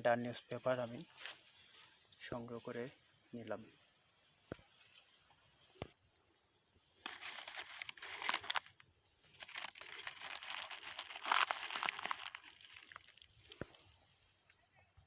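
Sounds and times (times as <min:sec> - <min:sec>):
plastic and paper crinkling: 0:07.0 - 0:08.7, 0:09.3 - 0:13.3.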